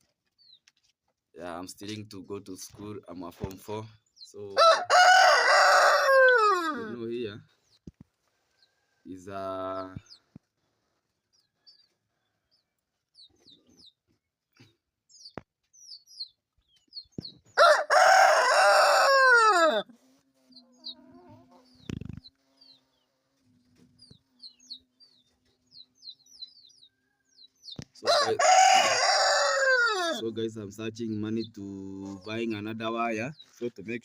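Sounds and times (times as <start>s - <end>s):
chicks cheeping: 0.2s - 0.8s, 3.0s - 34.0s
rooster crowing: 4.6s - 7.0s, 17.6s - 19.9s, 28.0s - 30.2s.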